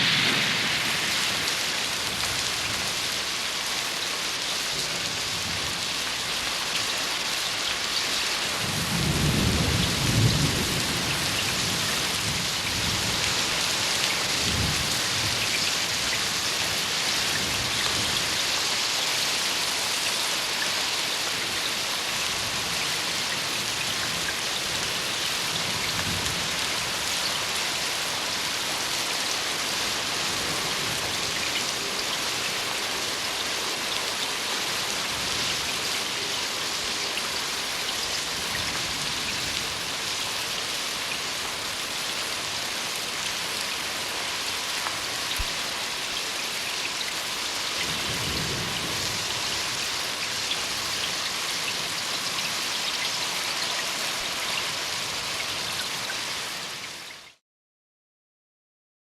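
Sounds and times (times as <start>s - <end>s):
thunder rumbling: 0.0s - 3.4s, 8.6s - 15.4s
heavy rain hissing: 0.0s - 57.1s.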